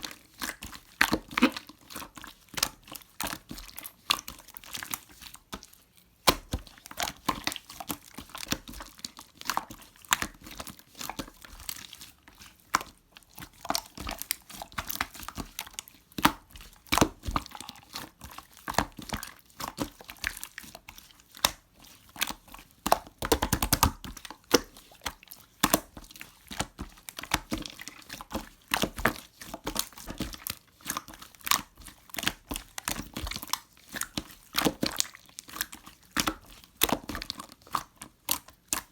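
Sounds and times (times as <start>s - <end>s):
slime popping and crackling: 22.2s - 38.9s.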